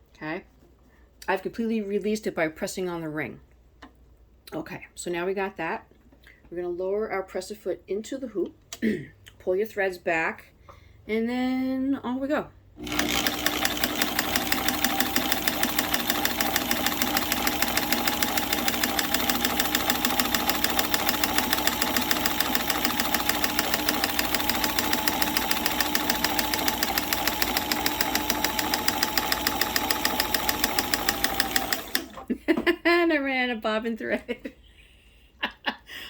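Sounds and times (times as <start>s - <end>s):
sewing machine needle clatter: 12.8s - 32.3s
sewing machine motor hum: 12.8s - 32.4s.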